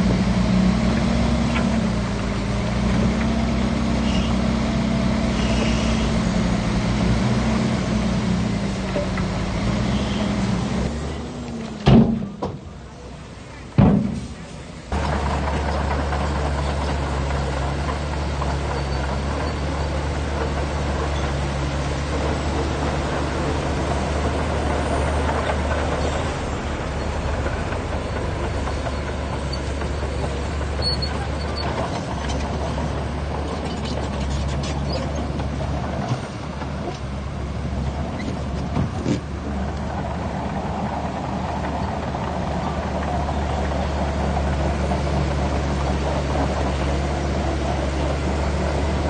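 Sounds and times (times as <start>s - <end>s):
bulldozer diesel engine running: 0.0s - 49.0s
metal clanks and knocks: 11.8s - 12.7s, 13.8s - 14.4s.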